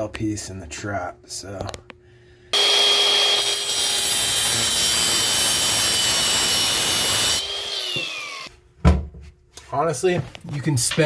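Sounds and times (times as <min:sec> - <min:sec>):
power cutting tool whining: 0:02.6 - 0:08.5.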